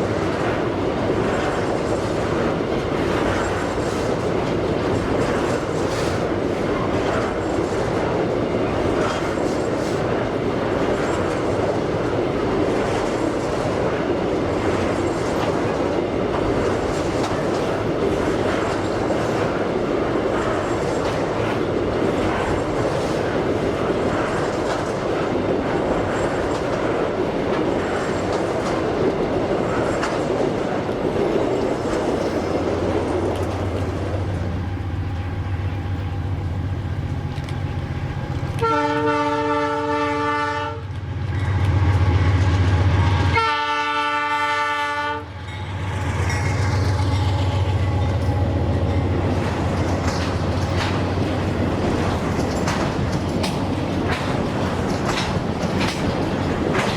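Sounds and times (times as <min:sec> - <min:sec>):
diesel locomotive engine drone: 0:00.0 - 0:56.9
train wheels clickety-clack: 0:00.0 - 0:56.9
locomotive horn blasts: 0:38.6 - 0:40.9, 0:43.3 - 0:45.4.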